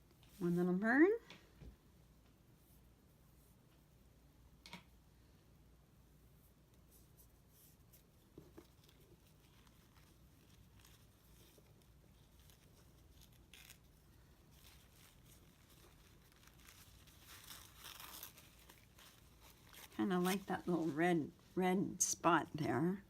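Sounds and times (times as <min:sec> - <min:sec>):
paper napkin rustling and tearing: 0:06.9 - 0:21.3.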